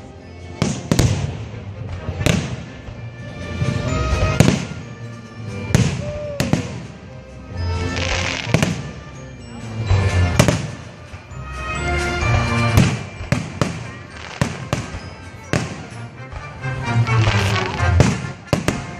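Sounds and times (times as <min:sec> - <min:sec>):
fireworks crackling: 0:00.0 - 0:18.9
music with held notes: 0:00.0 - 0:18.9
fireworks bangs: 0:00.6 - 0:05.0, 0:05.6 - 0:07.0, 0:07.8 - 0:09.2, 0:09.9 - 0:11.2, 0:12.5 - 0:18.9.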